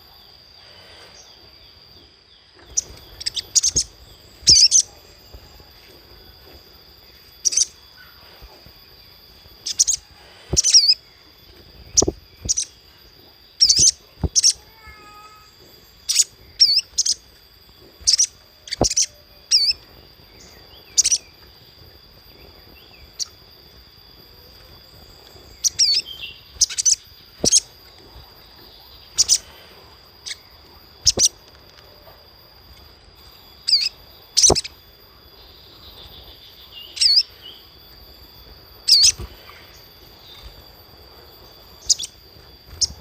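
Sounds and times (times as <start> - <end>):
faint high-pitched hum: 0.0 - 43.0
bird sharp high chips: 31.0 - 31.4.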